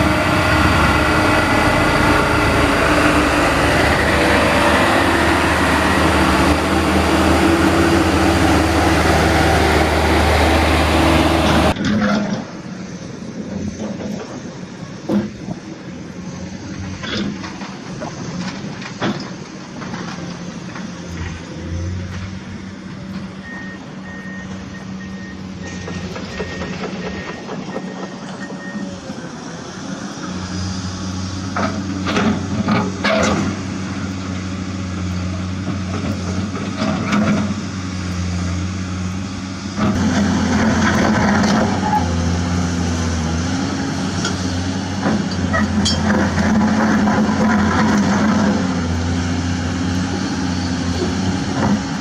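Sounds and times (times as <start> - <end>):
truck engine running: 0.0 - 52.0
reversing alarm beeping: 4.4 - 7.1, 23.4 - 29.0
metal clanks: 45.1 - 46.5.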